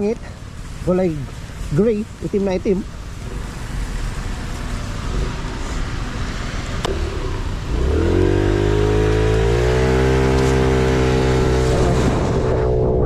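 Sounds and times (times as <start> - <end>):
road and wind noise: 0.0 - 13.0
scooter engine revving: 2.5 - 12.9.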